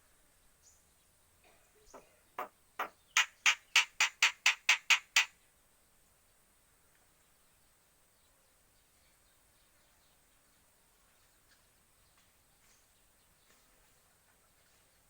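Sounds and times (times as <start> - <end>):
starling harsh squawks: 2.8 - 5.3.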